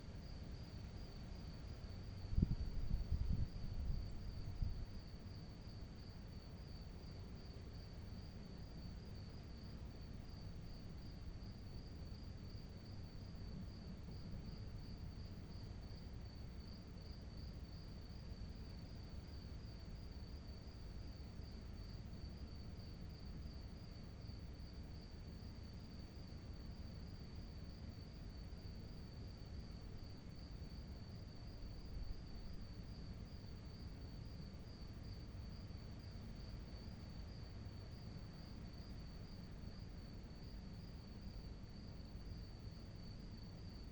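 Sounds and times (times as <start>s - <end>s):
low background rumble: 0.0s - 24.8s
cricket trilling: 0.2s - 43.9s.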